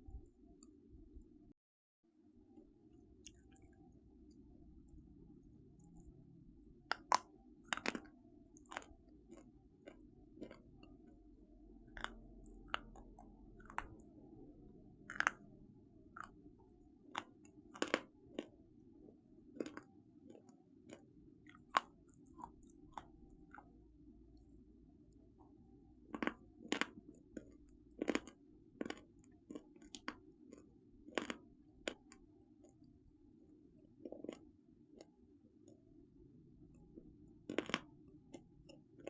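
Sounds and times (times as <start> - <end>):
faint low hum: 0.0 - 1.6, 2.2 - 39.0
person chewing crunchy food: 3.0 - 39.0.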